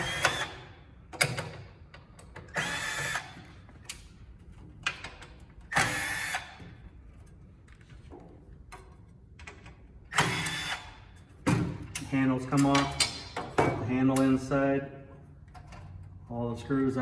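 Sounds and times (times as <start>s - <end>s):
power drill whirring: 0.0s - 0.8s, 2.5s - 3.5s, 5.7s - 6.6s, 10.1s - 11.0s.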